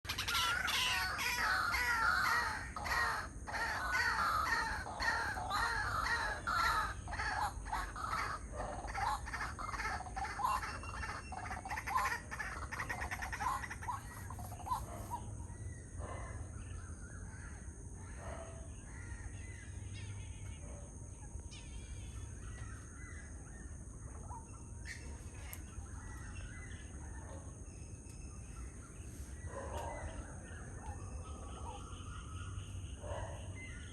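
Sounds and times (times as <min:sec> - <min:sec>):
waterhens croaking calls: 0:00.0 - 0:15.3.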